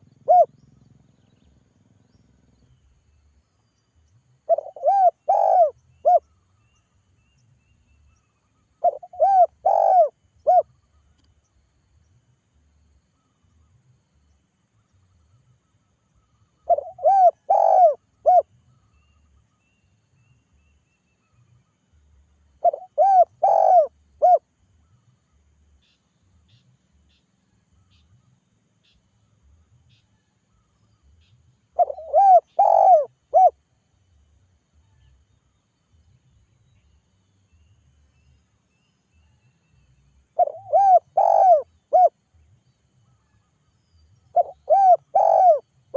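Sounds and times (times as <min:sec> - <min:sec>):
dove cooing: 0:00.0 - 0:00.6, 0:04.5 - 0:06.2, 0:08.8 - 0:10.7, 0:16.6 - 0:18.5, 0:22.6 - 0:24.4, 0:31.8 - 0:33.6, 0:40.4 - 0:42.2, 0:44.3 - 0:45.6.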